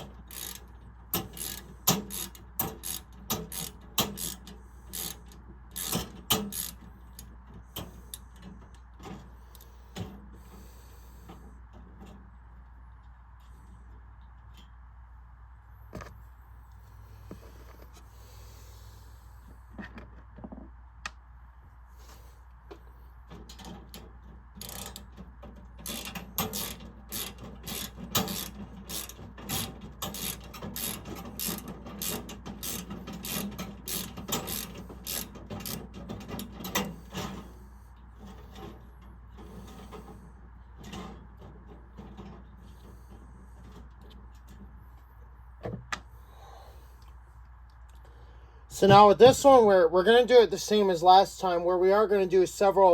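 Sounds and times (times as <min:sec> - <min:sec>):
ratchet wrench clicking: 0:00.2 - 0:07.3, 0:24.6 - 0:25.1, 0:25.8 - 0:36.9.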